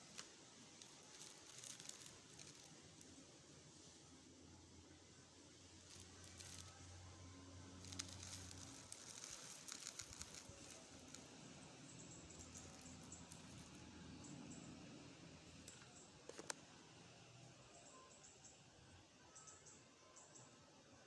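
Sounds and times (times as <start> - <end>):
soft clicks and rustles: 0.0 - 3.2, 5.8 - 6.9, 7.8 - 11.4, 12.1 - 13.8.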